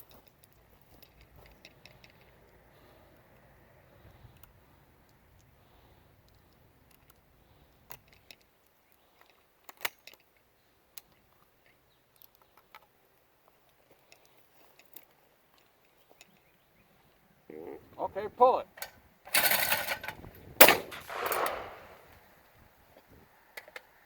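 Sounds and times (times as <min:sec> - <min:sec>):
shotgun handling clicks: 0:18.8 - 0:22.0.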